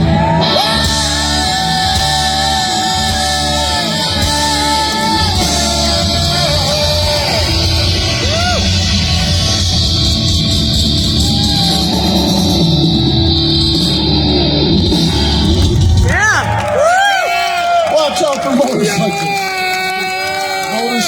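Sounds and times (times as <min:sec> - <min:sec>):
dense low end bass: 0:00.0 - 0:16.7
electric guitar: 0:00.0 - 0:16.8
person singing long bending notes: 0:00.2 - 0:10.2.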